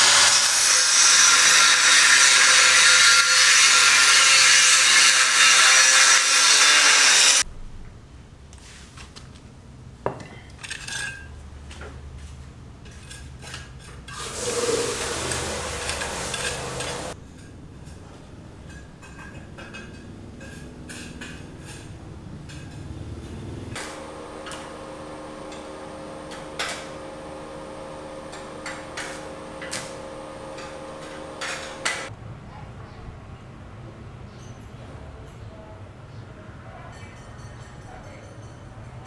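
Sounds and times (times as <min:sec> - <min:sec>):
power tool cutting: 0:00.0 - 0:07.4, 0:14.2 - 0:17.2, 0:23.8 - 0:32.1
scraping: 0:00.0 - 0:07.4, 0:14.0 - 0:17.2.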